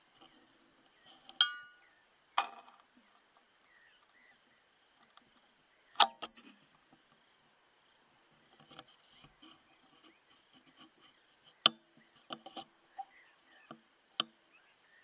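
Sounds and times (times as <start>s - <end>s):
faint high hiss: 0.0s - 15.0s
metallic clinks and knocks: 1.4s - 1.8s.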